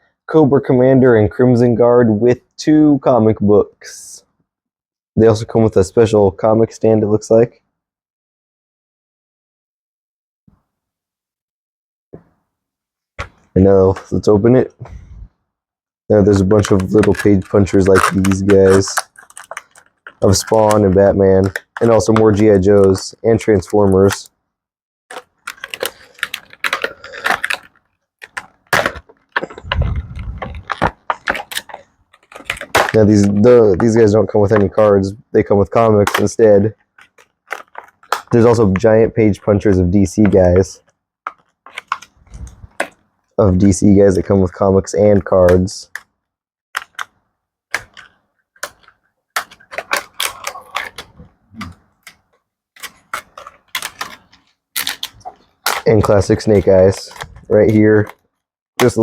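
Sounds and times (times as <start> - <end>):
plastic and cardboard crackling: 16.1 - 24.3, 25.1 - 46.2, 46.8 - 59.0
packaging clicks and rustles: 16.2 - 24.3, 25.1 - 43.1, 46.8 - 58.2, 58.8 - 59.0.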